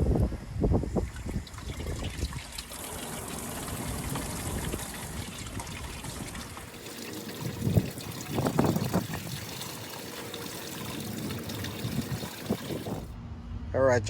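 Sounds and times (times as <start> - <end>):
water running and splashing: 1.0 - 13.2.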